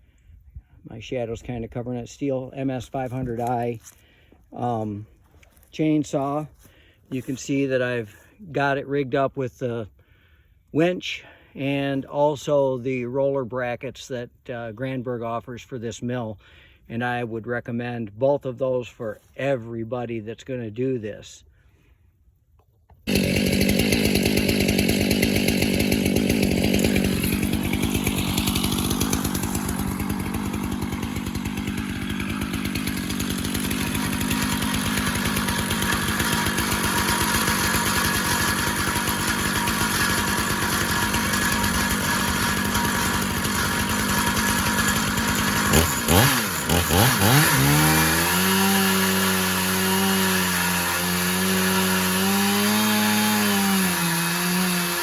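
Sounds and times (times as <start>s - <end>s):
chainsaw cutting through log: 2.8s - 5.0s, 23.0s - 55.0s.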